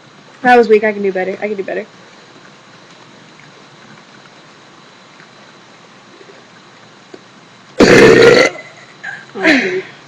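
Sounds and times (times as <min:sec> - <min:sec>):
woman burping: 0:07.8 - 0:08.8.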